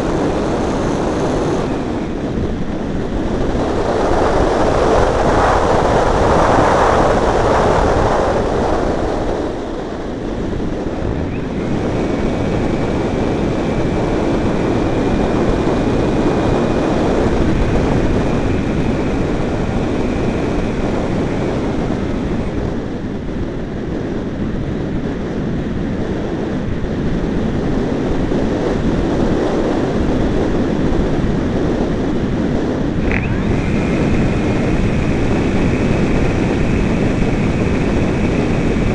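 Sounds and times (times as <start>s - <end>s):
model plane motor whine: 0.0s - 23.3s, 33.0s - 38.9s
wind buffeting microphone: 0.0s - 38.9s.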